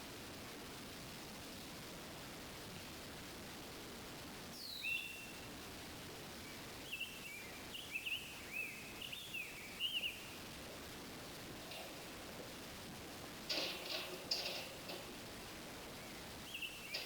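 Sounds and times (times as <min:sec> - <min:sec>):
faint outdoor background hiss: 0:00.0 - 0:17.0
songbird singing: 0:04.5 - 0:05.6, 0:06.3 - 0:12.7, 0:13.4 - 0:17.0.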